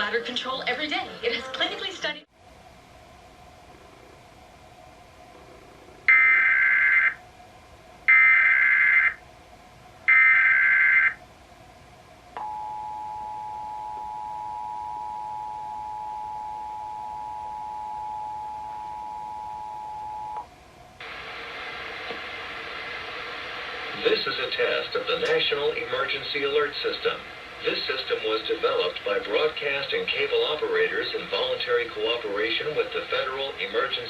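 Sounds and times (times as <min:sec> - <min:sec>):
warbling data tones: 0:06.0 - 0:07.2, 0:08.1 - 0:09.2, 0:10.1 - 0:11.2
steady hiss: 0:20.6 - 0:34.0.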